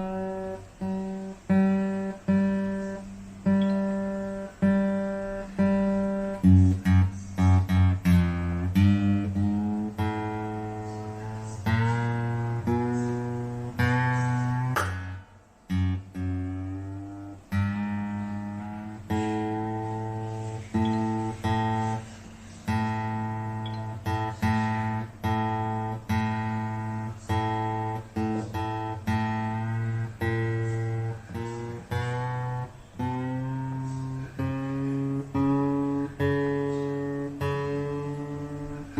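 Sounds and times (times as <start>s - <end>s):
acoustic guitar chords: 0.0s - 38.9s.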